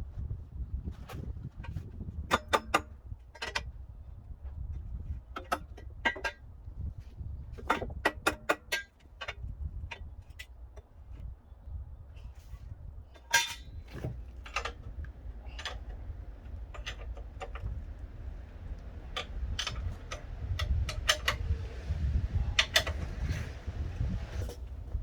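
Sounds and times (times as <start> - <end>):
sharp mechanical clicks and knocks: 13.5 - 23.6
low rumble of water pump: 13.8 - 25.0.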